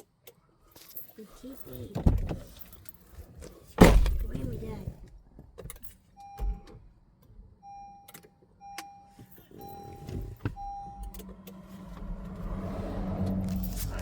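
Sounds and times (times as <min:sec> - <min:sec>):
car warning chime beeps: 0:06.1 - 0:06.9, 0:07.5 - 0:12.4
low steady hum: 0:09.6 - 0:14.0.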